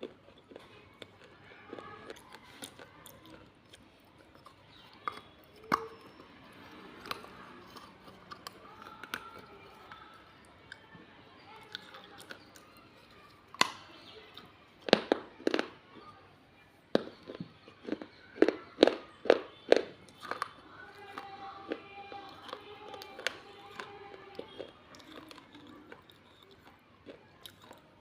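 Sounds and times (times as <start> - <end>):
clay crunching between teeth: 0.0 - 16.2, 16.9 - 28.0.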